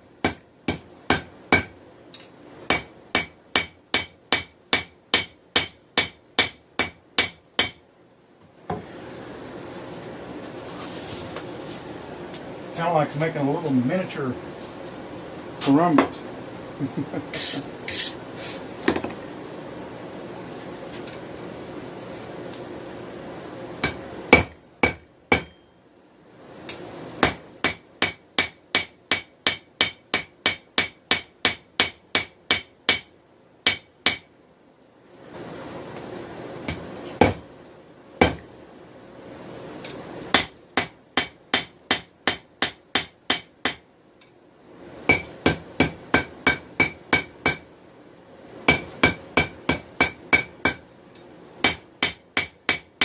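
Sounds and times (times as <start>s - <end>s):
hammer striking steel on anvil: 0.2s - 7.8s, 23.8s - 25.8s, 27.2s - 34.3s, 39.9s - 43.8s, 45.1s - 47.6s, 48.7s - 50.8s, 51.6s - 53.0s.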